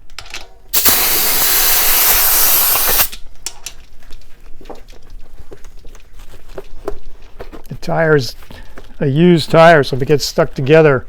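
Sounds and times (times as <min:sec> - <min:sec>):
compressed air hissing from hose: 0:00.7 - 0:03.2
rustling: 0:03.2 - 0:11.0.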